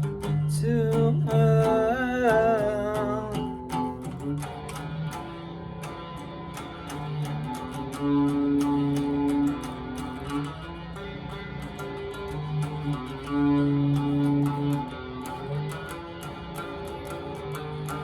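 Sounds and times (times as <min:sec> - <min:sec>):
guitar music with steady beat: 0:00.0 - 0:18.0
person singing with vibrato: 0:00.4 - 0:04.1.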